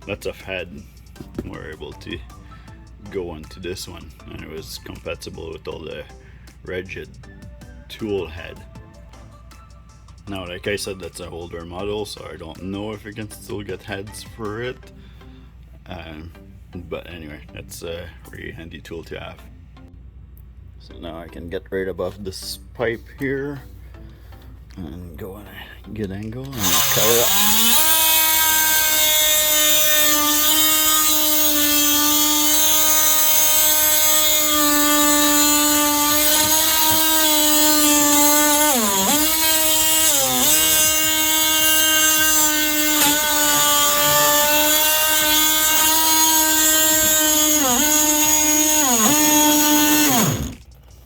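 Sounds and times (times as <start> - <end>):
oscillating multi-tool cutting plastic pipe: 26.5 - 50.8.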